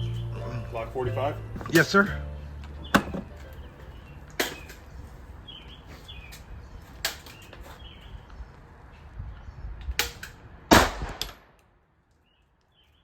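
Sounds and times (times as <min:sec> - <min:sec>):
pistol shots: 0:10.0 - 0:11.6.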